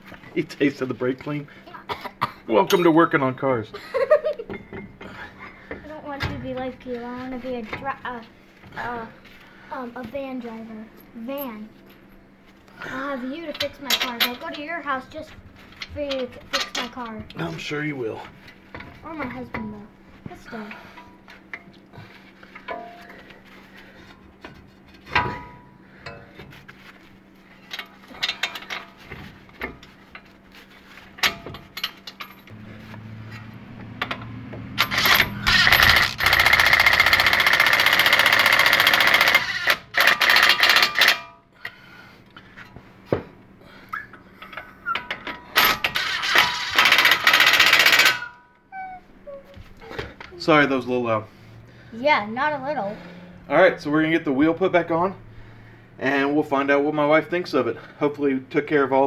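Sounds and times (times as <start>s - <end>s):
metal tools clinking: 2.6s - 5.0s, 31.1s - 41.4s, 44.4s - 48.4s
impact wrench hammering: 32.8s - 41.3s.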